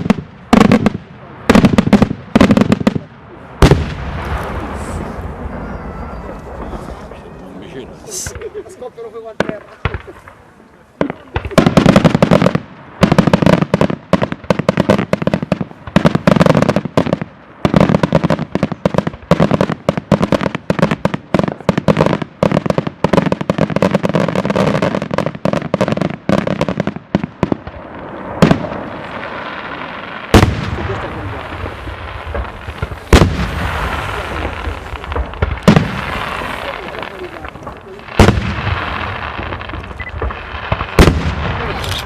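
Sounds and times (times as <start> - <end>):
firecracker bangs: 0.0 - 7.1, 25.7 - 42.0.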